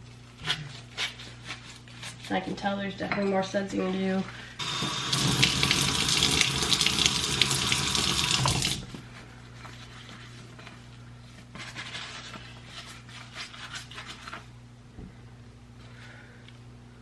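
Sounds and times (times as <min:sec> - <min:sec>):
faucet running into sink: 0:04.6 - 0:08.8.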